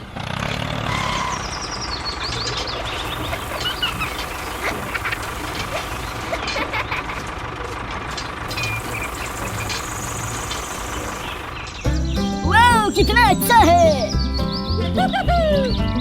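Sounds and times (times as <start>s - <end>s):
birds chirping: 0.0s - 16.0s
small engine throbbing: 0.0s - 16.0s.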